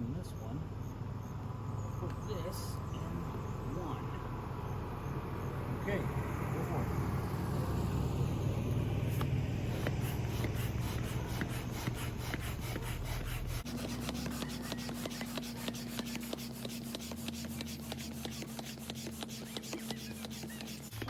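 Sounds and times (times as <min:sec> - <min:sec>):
hand pump strokes: 0:09.1 - 0:21.0.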